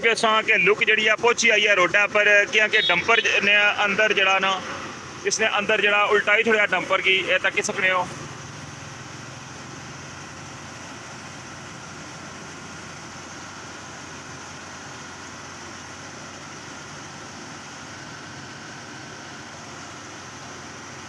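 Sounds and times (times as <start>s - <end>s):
diesel machinery engines running: 0.0s - 21.0s.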